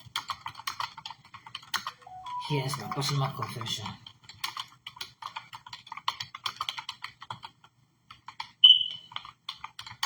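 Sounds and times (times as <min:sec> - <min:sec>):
keyboard typing clicks: 0:00.0 - 0:10.0
high-pitched beep: 0:02.1 - 0:03.1, 0:08.6 - 0:09.0.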